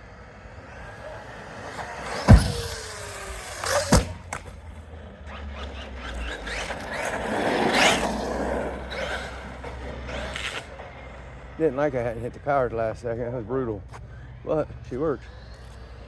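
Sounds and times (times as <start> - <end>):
electric motor and tyres running: 0.0 - 16.0
falling whine: 0.0 - 16.0
toy truck impacts: 2.0 - 8.2.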